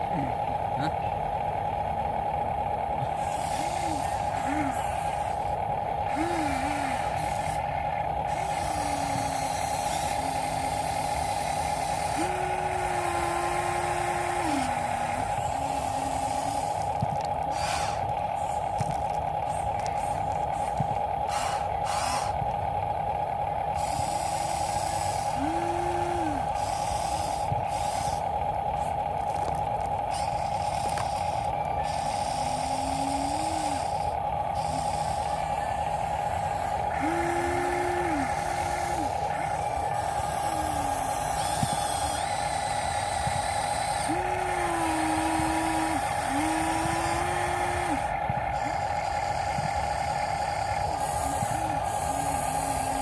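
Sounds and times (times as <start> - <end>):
electric drive high whine: 0.0 - 53.0
steady motor hum: 0.0 - 53.0.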